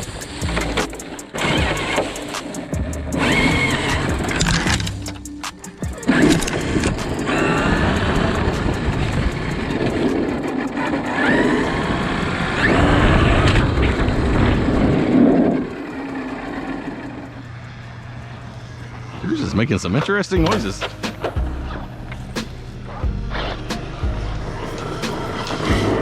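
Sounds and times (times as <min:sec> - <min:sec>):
tyre and chassis rattle: 0:00.0 - 0:15.6
sharp clicks: 0:00.0 - 0:19.2
electric rc truck motors whining: 0:00.0 - 0:26.0.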